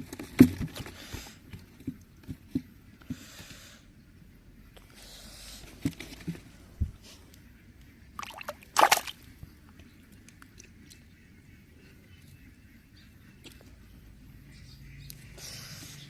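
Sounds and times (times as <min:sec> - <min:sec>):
water sloshing and splashing: 0:08.2 - 0:09.3.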